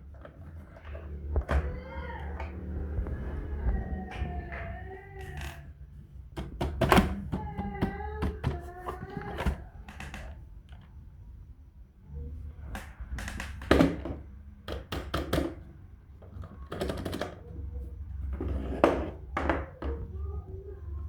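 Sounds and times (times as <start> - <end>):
low handling rumble: 0.6 - 6.1
plastic toy vehicles clattering: 6.3 - 11.0, 12.7 - 20.0.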